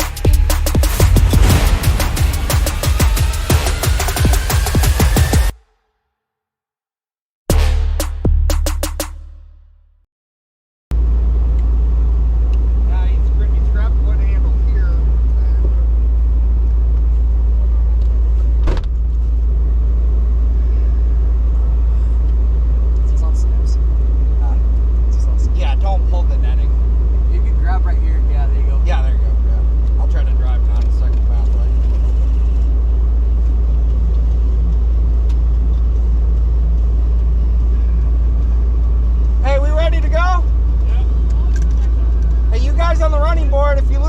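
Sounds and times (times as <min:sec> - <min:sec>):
truck engine and road rumble: 0:00.0 - 0:05.5, 0:10.9 - 0:44.0
sharp knock: 0:00.8 - 0:05.5.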